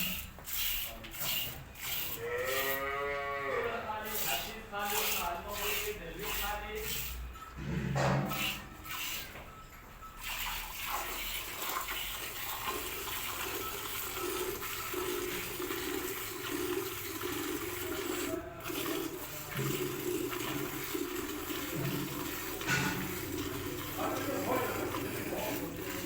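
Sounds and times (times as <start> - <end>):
milk streaming into pail: 10.2 - 26.0.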